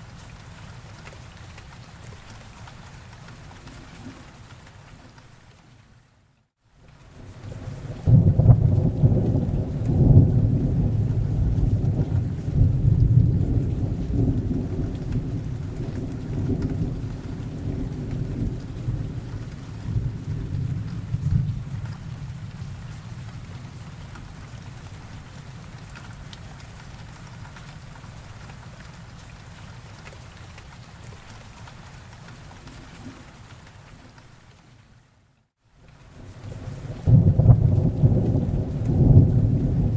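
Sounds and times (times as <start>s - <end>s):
rain: 0.0s - 39.9s
thunder rumbling: 7.6s - 23.8s, 36.5s - 39.9s.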